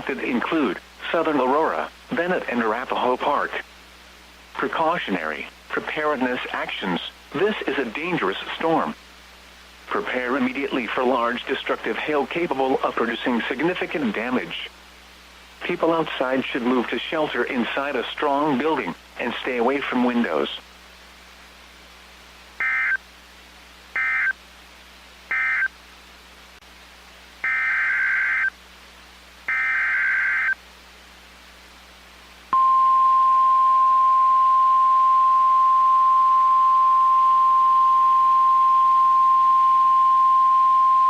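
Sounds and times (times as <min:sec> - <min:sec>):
steady warning alarm tone: 0:27.4 - 0:28.5.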